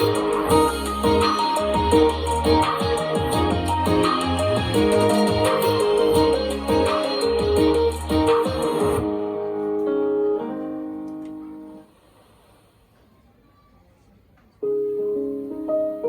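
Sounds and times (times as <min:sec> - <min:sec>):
pop band with drums: 0:00.0 - 0:09.2
keyboard and guitar chords: 0:00.0 - 0:11.9
piano chords: 0:00.0 - 0:11.9, 0:14.6 - 0:16.0.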